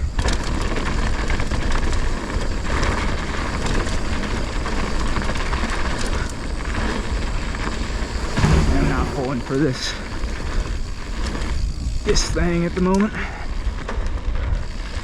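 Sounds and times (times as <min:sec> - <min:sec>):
bike clattering over bumps: 0:00.0 - 0:15.0
tyres rolling over dirt and rocks: 0:00.0 - 0:15.0
wind buffeting microphone: 0:03.2 - 0:12.6.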